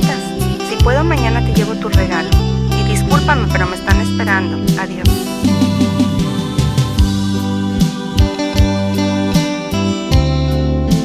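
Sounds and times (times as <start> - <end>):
keyboard chords: 0.0 - 11.0
keyboard melody: 0.0 - 11.0
steady beat: 5.0 - 7.5.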